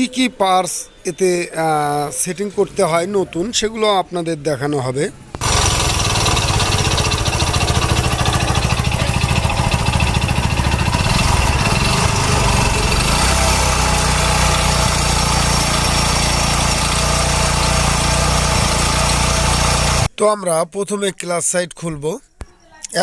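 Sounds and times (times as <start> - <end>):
motorcycle engine idling: 5.4 - 20.1.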